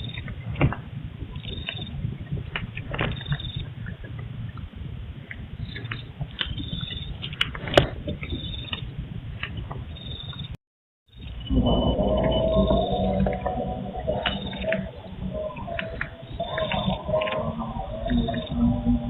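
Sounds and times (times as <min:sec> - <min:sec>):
low rumble: 0:00.0 - 0:10.5, 0:11.1 - 0:19.0
clicks and ticks: 0:12.9 - 0:18.7.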